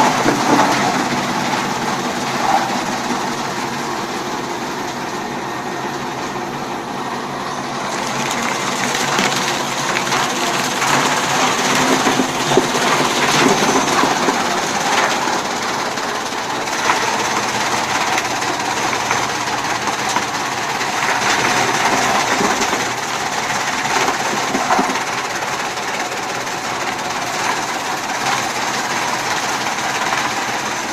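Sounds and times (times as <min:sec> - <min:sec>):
dense machine clatter: 0:00.0 - 0:06.4, 0:07.8 - 0:30.9
chaff cutter machine hum: 0:00.0 - 0:30.9.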